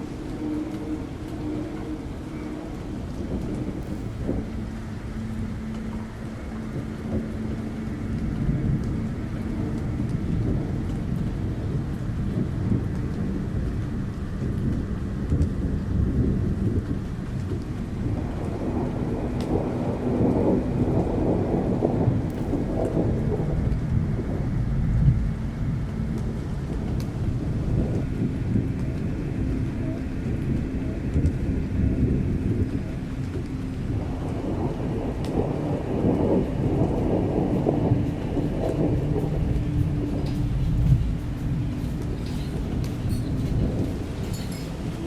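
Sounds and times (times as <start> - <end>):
faint low hum: 0.0 - 45.0
rain: 0.0 - 45.0
rolling thunder rumble: 0.0 - 45.0.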